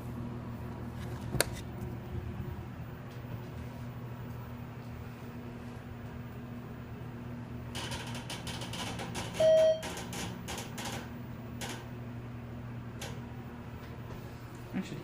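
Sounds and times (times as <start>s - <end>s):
ventilation fan hum: 0.0s - 15.0s
elevator door clicks and rattles: 7.7s - 11.9s, 13.0s - 13.2s
elevator arrival beep: 9.2s - 10.1s.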